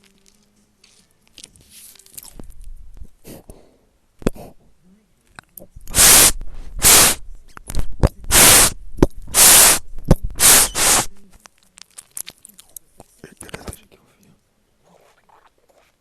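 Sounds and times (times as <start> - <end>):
harsh hissing bursts: 5.8 - 7.3, 8.0 - 11.2.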